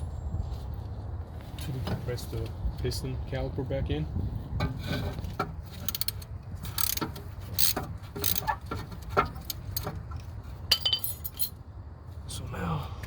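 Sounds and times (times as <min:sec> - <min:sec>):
metallic clicks and creaks of clamp: 0:04.6 - 0:10.3.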